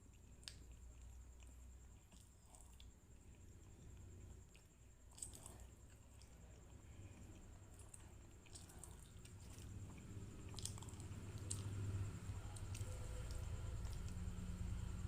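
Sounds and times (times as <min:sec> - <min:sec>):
close-up chewing: 0:00.0 - 0:15.0
low steady hum: 0:00.0 - 0:15.0
wet mouth clicks: 0:08.5 - 0:11.8.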